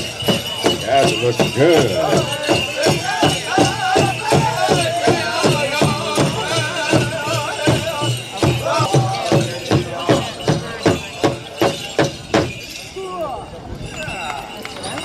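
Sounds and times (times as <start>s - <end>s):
hand drum steady beat: 0.0s - 12.6s
high wavering voices singing: 1.6s - 10.0s.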